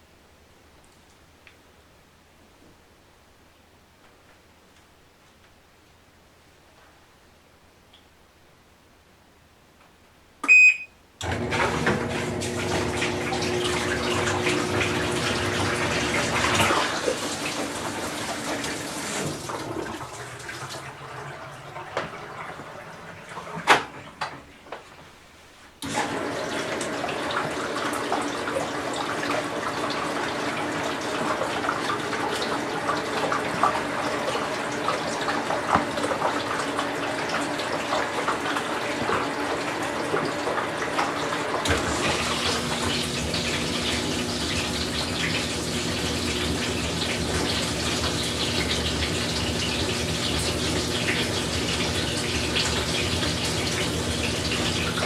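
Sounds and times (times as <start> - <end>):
washer hum: 10.4 - 55.0
water rushing into washer tub: 10.5 - 25.0, 25.8 - 55.0.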